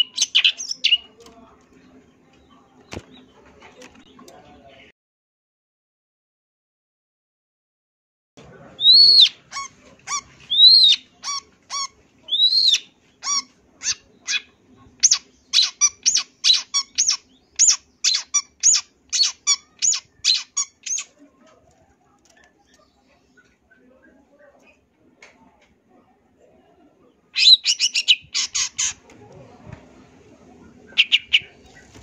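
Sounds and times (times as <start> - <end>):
bird chattering: 0.0 - 1.1, 8.8 - 21.2, 27.3 - 29.0, 30.8 - 32.0.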